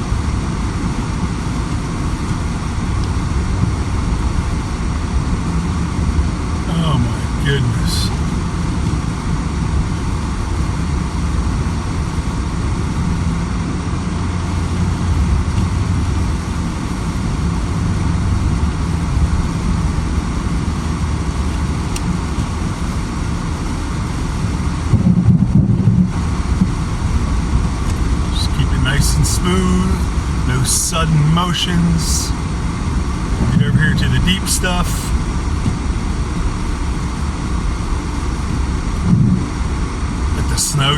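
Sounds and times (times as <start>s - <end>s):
car engine and tyres rumbling: 0.0s - 40.9s
road hiss: 6.0s - 13.2s, 26.1s - 38.9s, 39.7s - 40.9s.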